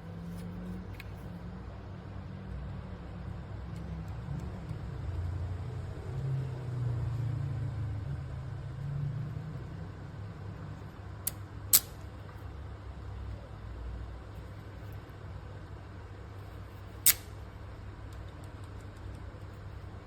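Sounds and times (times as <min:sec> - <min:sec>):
sharp clicks: 0:11.3 - 0:12.0, 0:17.1 - 0:17.4.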